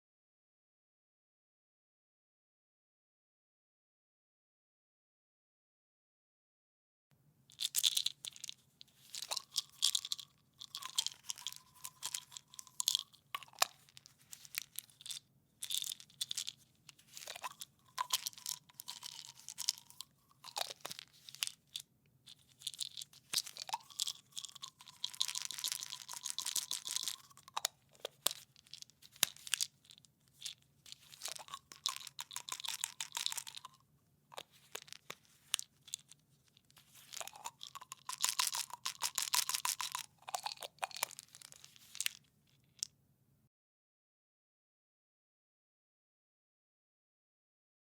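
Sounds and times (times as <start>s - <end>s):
pills rattling in plastic container: 7.5s - 33.8s, 34.4s - 42.9s.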